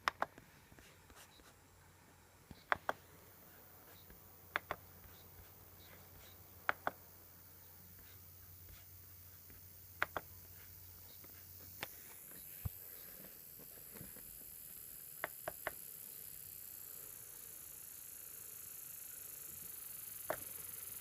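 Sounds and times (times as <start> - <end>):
laptop clicks: 0.0 - 0.4, 2.5 - 3.1, 4.0 - 5.2, 6.6 - 7.1, 10.0 - 10.3
faint steady hiss: 0.0 - 21.0.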